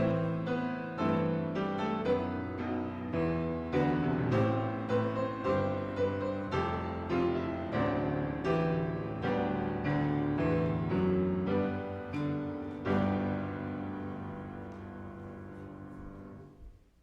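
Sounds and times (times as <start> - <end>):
slow piano piece: 0.0 - 17.0.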